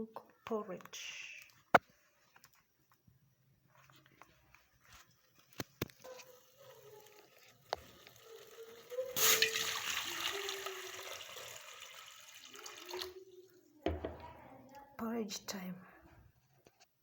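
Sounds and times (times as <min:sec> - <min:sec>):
water pouring: 0:06.0 - 0:13.6.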